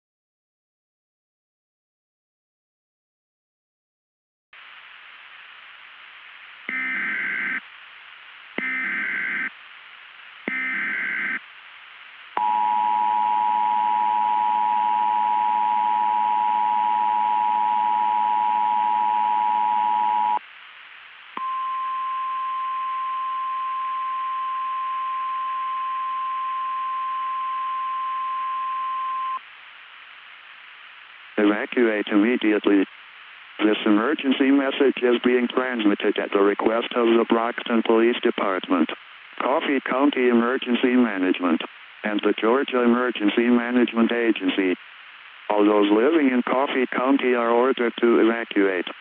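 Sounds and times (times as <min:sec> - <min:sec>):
static hiss: 0:04.6 - 0:13.7, 0:15.3 - 0:49.0
steady alarm tone: 0:08.6 - 0:09.5, 0:10.5 - 0:11.4
two-tone attention signal: 0:21.4 - 0:29.4.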